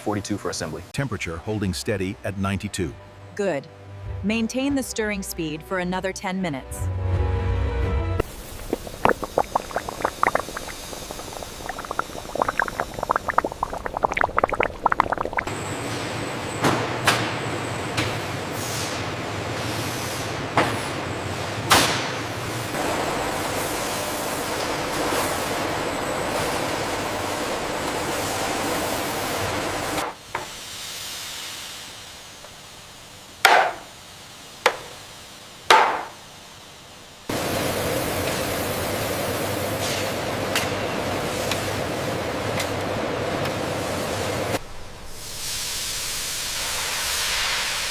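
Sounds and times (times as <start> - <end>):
thick liquid boiling: 8.2 - 15.6
factory noise hiss: 15.6 - 47.9.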